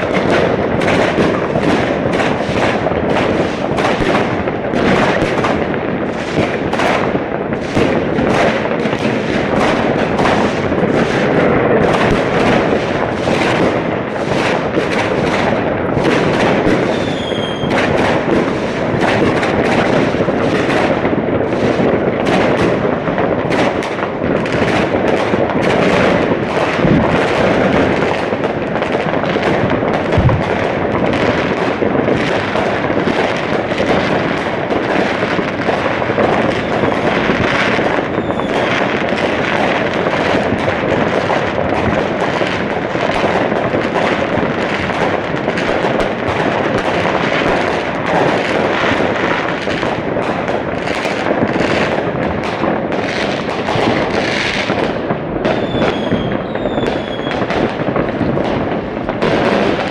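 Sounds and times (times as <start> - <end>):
deep firework booms: 0.0 - 59.9
fireworks bangs and crackles: 0.0 - 59.9
firework whistle: 16.0 - 18.7, 36.4 - 38.9, 55.5 - 57.5.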